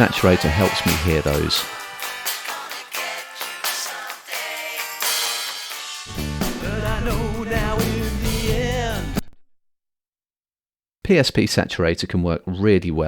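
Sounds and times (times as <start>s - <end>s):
person singing: 0.0s - 9.2s
rock song playing: 0.0s - 9.2s.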